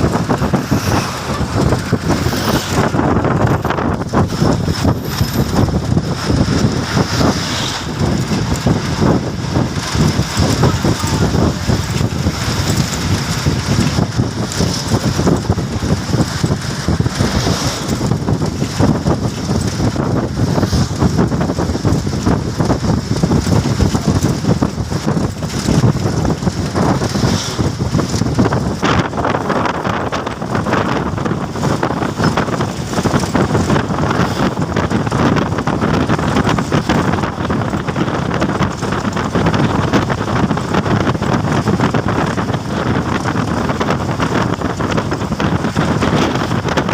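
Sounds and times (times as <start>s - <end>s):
moving vehicle on road: 0.0s - 46.9s
wind buffeting microphone: 0.0s - 46.9s.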